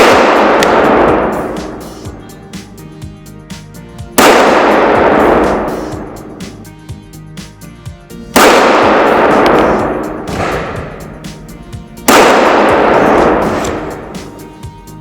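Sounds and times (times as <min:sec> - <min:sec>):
pistol shots echoing: 0:00.0 - 0:02.2, 0:04.2 - 0:06.6, 0:08.4 - 0:11.5, 0:12.1 - 0:14.5.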